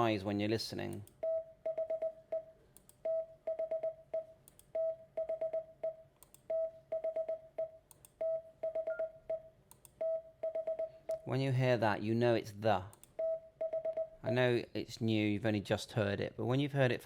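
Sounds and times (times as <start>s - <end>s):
morse code beeps: 1.2s - 2.5s, 3.1s - 11.0s, 13.2s - 14.2s.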